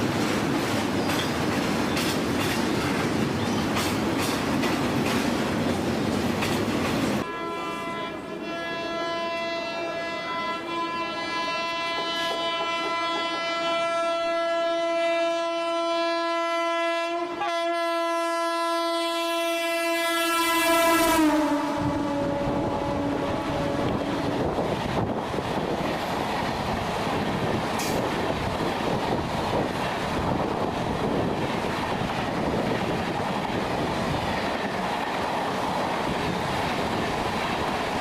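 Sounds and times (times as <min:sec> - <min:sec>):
train rushing past: 0:00.0 - 0:08.6, 0:20.2 - 0:38.0
train horn: 0:07.2 - 0:24.5.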